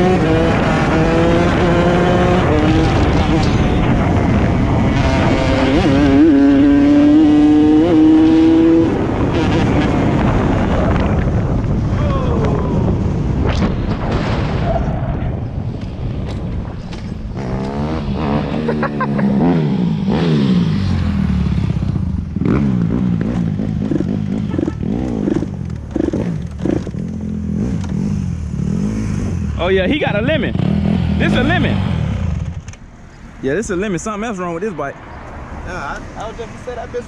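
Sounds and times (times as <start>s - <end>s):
dirt bike engine revving: 0.0s - 11.2s, 17.4s - 32.5s.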